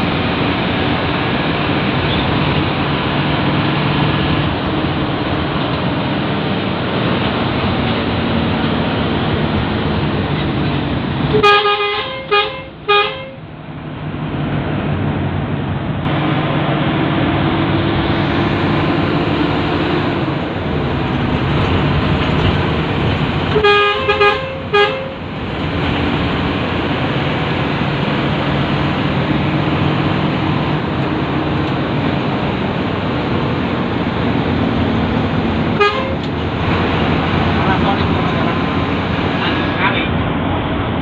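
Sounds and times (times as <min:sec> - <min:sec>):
bus engine and road noise: 0:00.0 - 0:41.0
bus horn blasts: 0:11.3 - 0:13.5, 0:23.5 - 0:25.3, 0:35.7 - 0:36.4.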